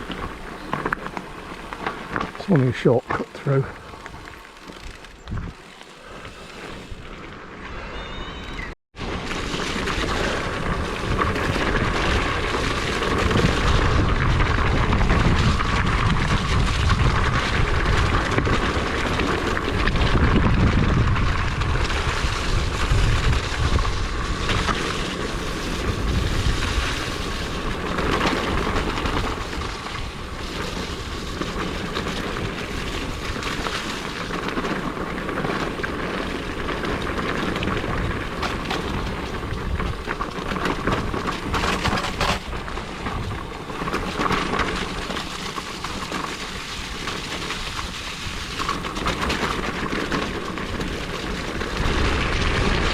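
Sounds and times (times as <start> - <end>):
bike rattling over rough ground: 0.0 - 52.9
wind buffeting microphone: 10.1 - 45.2.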